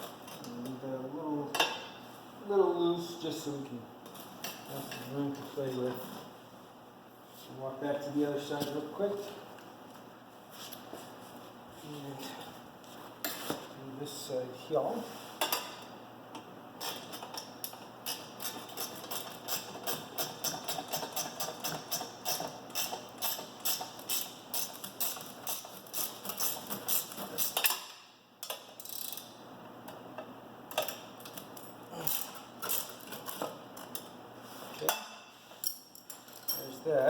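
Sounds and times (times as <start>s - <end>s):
ratchet wrench clicking: 28.4s - 29.3s.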